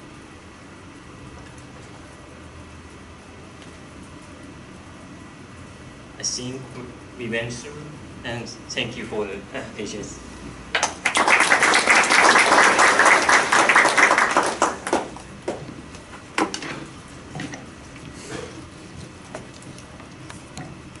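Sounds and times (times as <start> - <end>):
audience applauding: 10.8 - 15.2.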